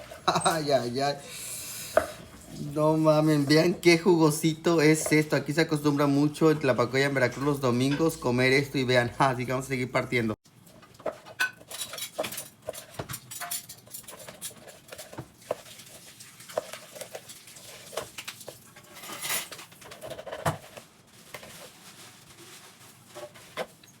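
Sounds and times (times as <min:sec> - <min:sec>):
cutlery scraping on a plate: 0:11.0 - 0:21.5.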